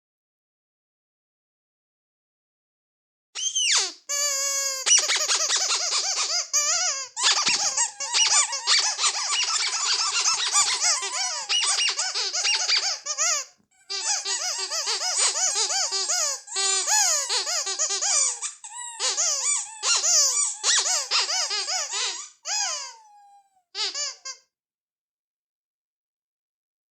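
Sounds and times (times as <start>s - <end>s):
rubber squeaky toys squeaking: 3.4s - 24.5s.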